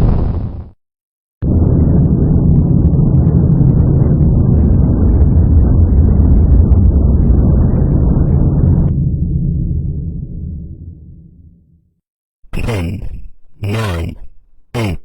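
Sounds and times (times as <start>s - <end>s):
rocket engine roaring with crackle: 1.4s - 9.4s.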